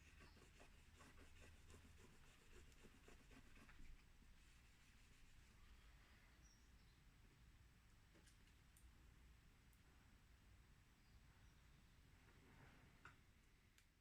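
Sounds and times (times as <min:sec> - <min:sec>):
faint rustling and rubbing: 0:00.0 - 0:05.8.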